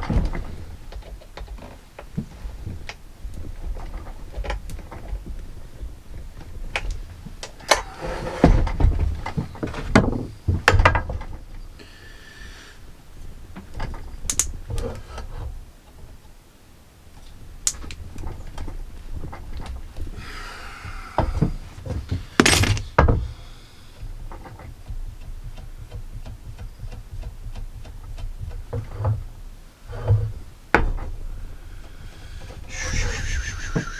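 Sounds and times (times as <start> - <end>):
scraping on workbench: 22.1 - 23.0
metal knocks and clinks: 22.4 - 22.9
brief hiss: 32.7 - 33.9.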